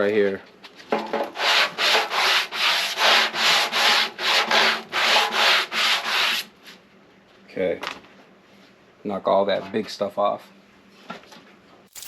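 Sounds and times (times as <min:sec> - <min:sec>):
sandpaper rasping on metal: 0:01.4 - 0:06.5.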